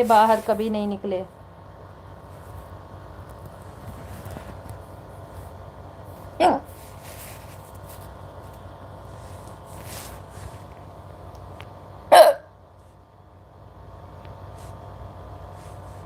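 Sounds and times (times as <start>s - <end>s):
low background hum: 0.0s - 16.0s
woman hiccuping: 12.1s - 12.6s.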